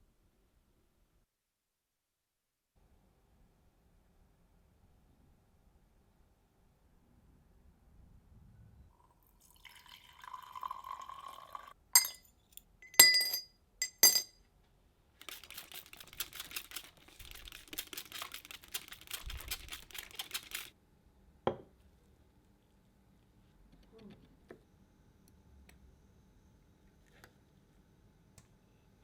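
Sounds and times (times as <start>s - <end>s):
liquid poured into glass: 9.0s - 12.2s
ringing glass clinks: 12.0s - 14.3s.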